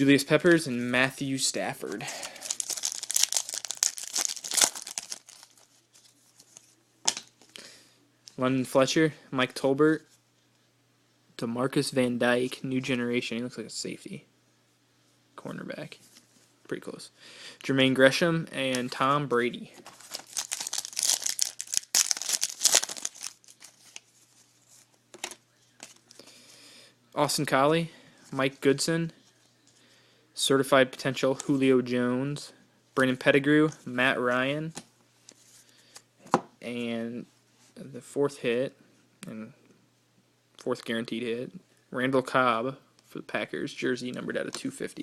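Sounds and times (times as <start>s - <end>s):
foil wrapper tearing and crumpling: 2.2s - 5.7s, 19.8s - 24.0s.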